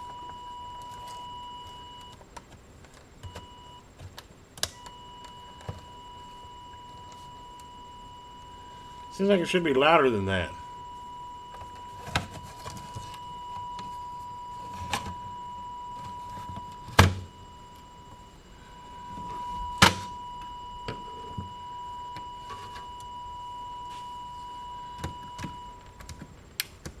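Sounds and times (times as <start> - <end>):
steady test tone: 4.8 - 25.8.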